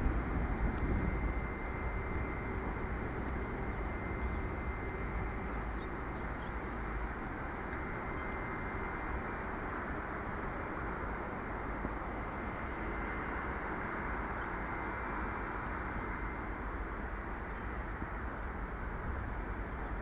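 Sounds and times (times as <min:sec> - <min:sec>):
thin high whine: 0:00.0 - 0:20.0.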